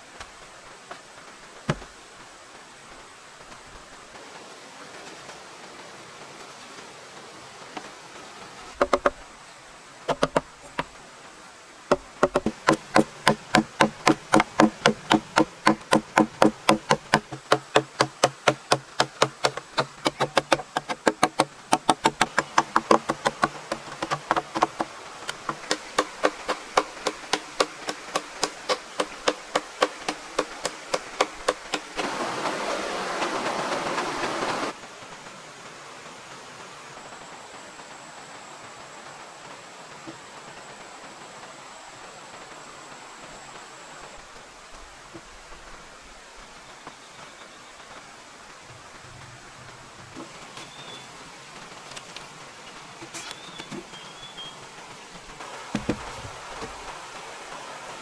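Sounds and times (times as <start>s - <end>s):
hammer blows: 11.9s - 32.2s.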